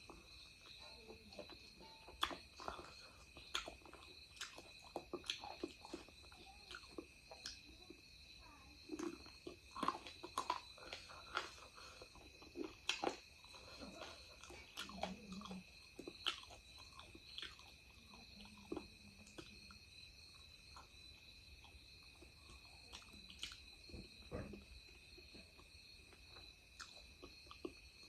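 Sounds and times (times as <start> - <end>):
chewing clicks and mouth smacks: 0.0 - 8.0, 8.8 - 28.0
faint steady high tone: 0.0 - 12.2.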